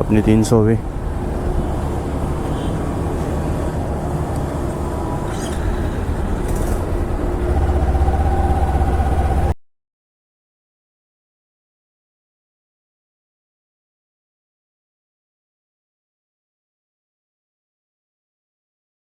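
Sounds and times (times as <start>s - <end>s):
motorcycle engine rumbling: 0.0s - 9.6s.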